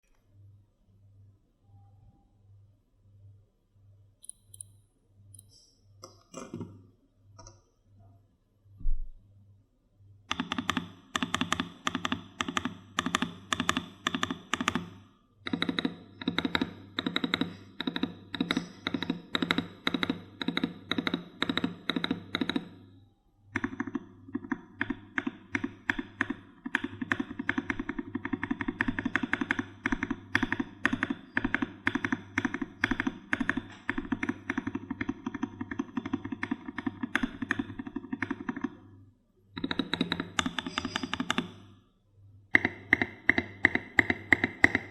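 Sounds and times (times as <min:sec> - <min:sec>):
fast typing on mechanical keyboard: 0:23.6 - 0:38.6.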